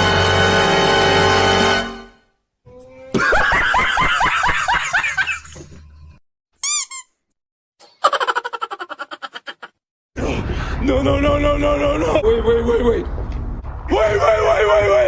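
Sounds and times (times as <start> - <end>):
laughing sound effect: 3.1 - 5.9, 7.8 - 9.8.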